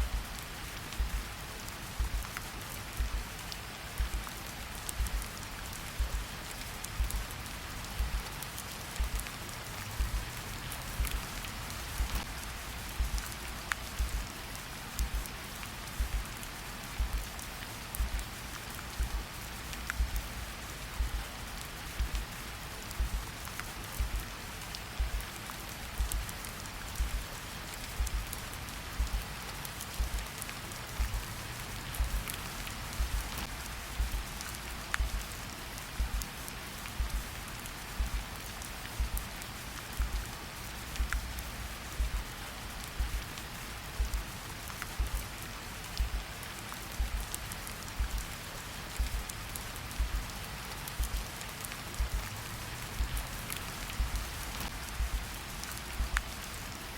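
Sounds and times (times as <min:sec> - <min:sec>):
heartbeat thumps: 0:00.0 - 0:00.3, 0:00.9 - 0:01.3, 0:01.9 - 0:02.3, 0:03.0 - 0:03.3, 0:03.9 - 0:05.3, 0:06.0 - 0:06.3, 0:06.9 - 0:08.3, 0:09.0 - 0:09.3, 0:09.9 - 0:11.3, 0:11.9 - 0:12.3, 0:12.9 - 0:13.3, 0:13.9 - 0:14.3, 0:15.0 - 0:15.3, 0:15.9 - 0:16.3, 0:17.0 - 0:17.3, 0:18.0 - 0:18.3, 0:19.0 - 0:19.3, 0:19.9 - 0:20.4, 0:21.0 - 0:21.3, 0:21.9 - 0:22.3, 0:23.0 - 0:23.3, 0:24.0 - 0:24.3, 0:25.0 - 0:25.3, 0:26.0 - 0:26.3, 0:27.0 - 0:27.3, 0:27.9 - 0:28.3, 0:29.0 - 0:29.3, 0:30.0 - 0:30.3, 0:31.0 - 0:34.4, 0:35.0 - 0:35.3, 0:36.0 - 0:36.4, 0:37.0 - 0:37.3, 0:38.0 - 0:38.3, 0:39.0 - 0:39.3, 0:40.0 - 0:40.3, 0:41.0 - 0:42.3, 0:43.0 - 0:43.3, 0:44.0 - 0:44.4, 0:45.0 - 0:45.3, 0:46.0 - 0:46.3, 0:47.0 - 0:47.3, 0:48.0 - 0:48.3, 0:49.0 - 0:49.4, 0:50.0 - 0:50.4, 0:51.0 - 0:51.3, 0:52.0 - 0:52.4, 0:53.0 - 0:53.4, 0:54.0 - 0:55.4, 0:56.0 - 0:56.6
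steady rain: 0:00.0 - 0:56.9.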